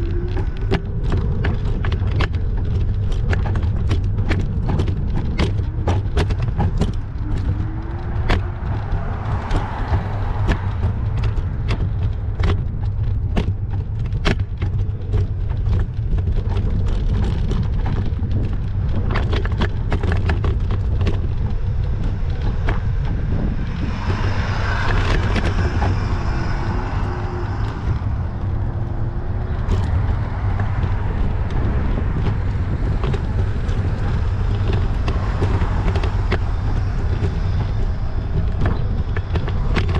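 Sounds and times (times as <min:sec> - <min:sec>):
bicycle clicks and rattles: 0:00.0 - 0:39.9
low traffic rumble: 0:00.0 - 0:39.9
car passing: 0:04.8 - 0:13.3, 0:19.4 - 0:39.9.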